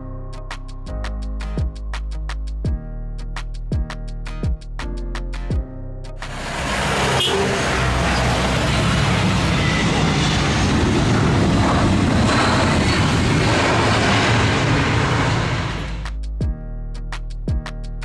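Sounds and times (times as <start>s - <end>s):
aircraft engine noise: 6.2s - 16.2s.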